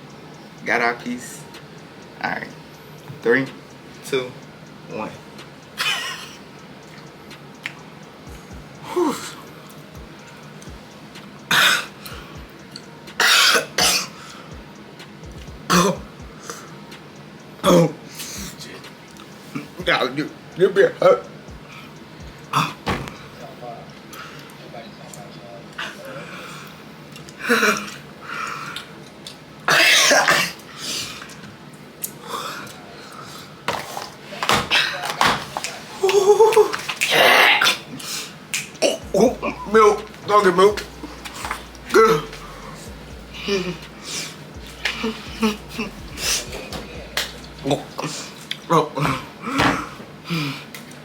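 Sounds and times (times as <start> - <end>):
person coughing harshly: 5.8 - 6.4, 13.2 - 14.2, 15.7 - 16.0, 43.4 - 47.0
people coughing: 5.8 - 6.5, 8.3 - 10.2, 11.4 - 12.4, 13.1 - 14.5, 15.3 - 16.8, 17.6 - 18.6, 22.5 - 23.4, 27.3 - 28.1, 29.7 - 31.4, 33.8 - 50.8
throat clearing: 15.7 - 16.6, 38.8 - 50.6.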